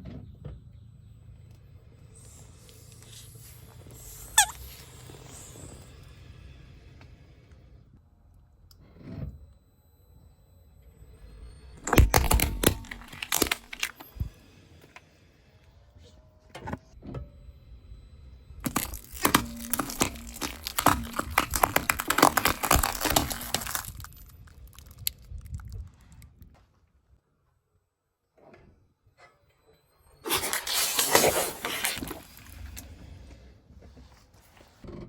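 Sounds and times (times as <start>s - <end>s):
objects cracking under car tyre: 11.8s - 14.3s, 18.6s - 26.5s, 30.3s - 33.2s.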